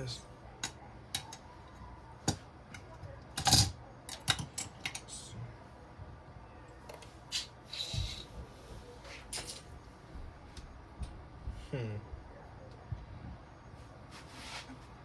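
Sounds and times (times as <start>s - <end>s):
metal parts clicking and clattering: 3.4s - 5.1s, 9.3s - 9.7s.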